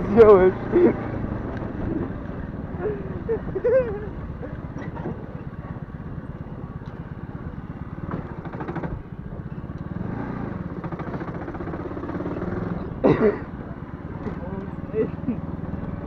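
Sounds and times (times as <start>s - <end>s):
moped engine running: 0.0s - 16.0s.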